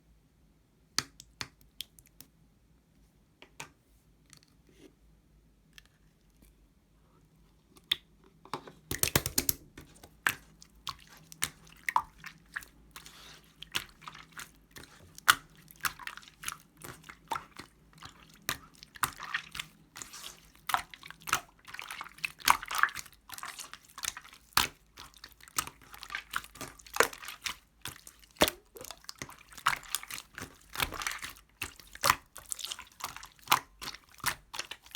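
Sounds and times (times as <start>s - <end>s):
slime squishing and popping: 13.6s - 34.9s.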